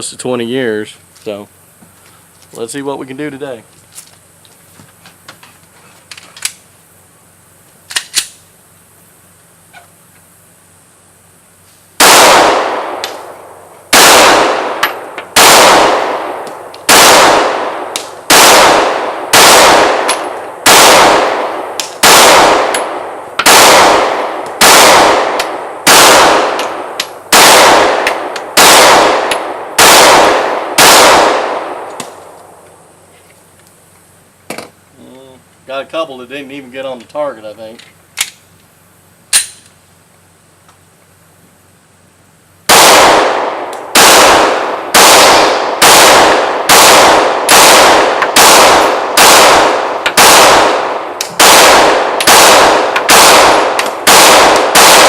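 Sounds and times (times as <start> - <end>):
pistol shots with echo: 12.0 - 32.2, 42.7 - 55.0.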